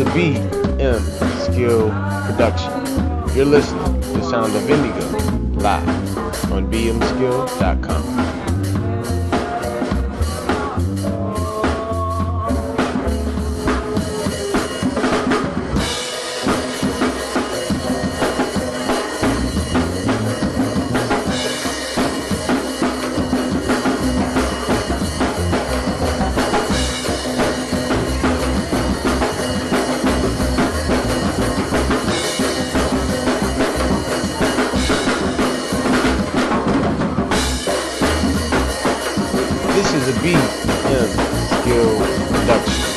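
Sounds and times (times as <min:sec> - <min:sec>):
kick and snare drum beat: 0:00.0 - 0:10.9, 0:12.3 - 0:42.9
live band music: 0:00.0 - 0:42.9.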